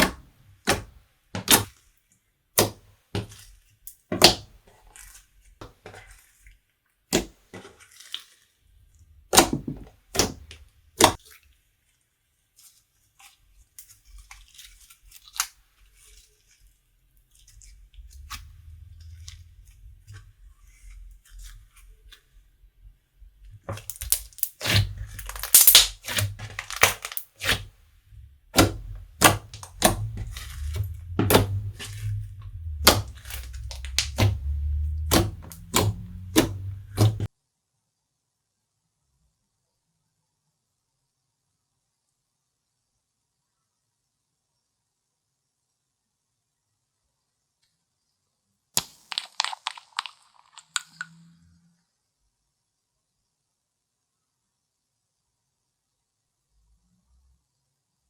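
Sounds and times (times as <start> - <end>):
low handling rumble: 17.6 - 20.6, 28.0 - 37.3
slime popping and crackling: 23.7 - 37.3, 48.8 - 51.1.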